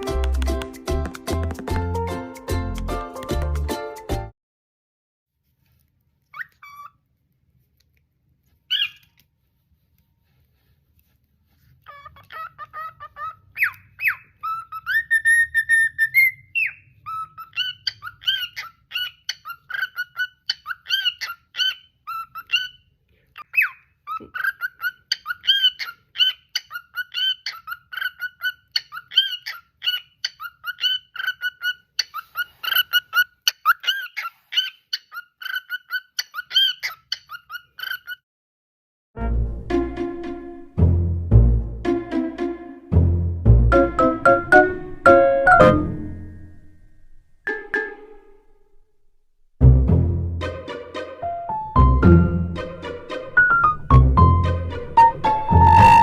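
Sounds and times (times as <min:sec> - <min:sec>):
cockatiel whistling: 0:08.7 - 0:09.1, 0:12.7 - 0:22.7, 0:55.0 - 0:56.0.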